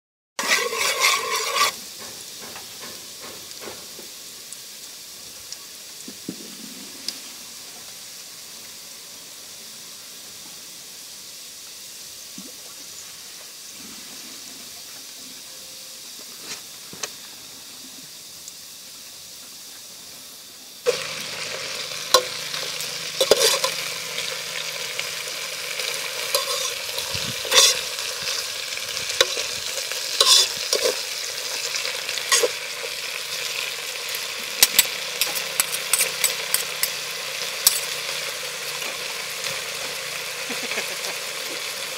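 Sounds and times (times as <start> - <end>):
food sizzling in a pan: 0.4 - 41.9
utensil clanking on pan: 23.2 - 23.8, 26.3 - 27.9, 30.2 - 31.0.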